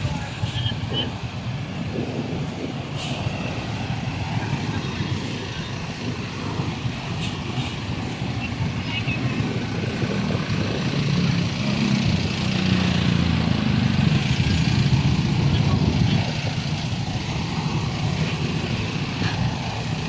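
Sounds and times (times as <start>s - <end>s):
heavy vehicle engine running: 0.0s - 20.0s
street traffic: 0.0s - 20.0s.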